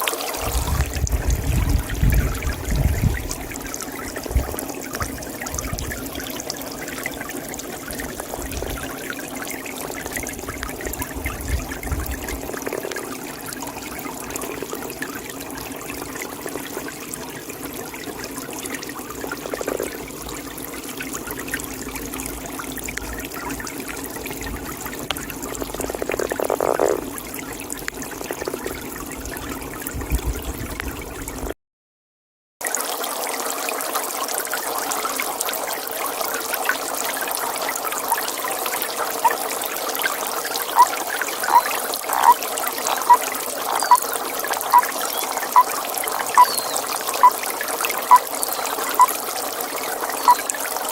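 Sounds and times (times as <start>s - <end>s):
water trickling: 0.0s - 31.6s, 32.6s - 50.9s
toad calling: 19.4s - 20.0s, 25.0s - 27.2s, 39.2s - 39.4s, 40.1s - 49.2s, 50.1s - 50.6s.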